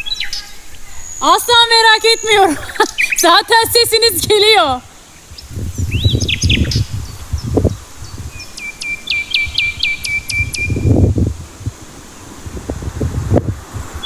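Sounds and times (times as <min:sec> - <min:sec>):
songbird singing high notes: 0:00.0 - 0:11.0.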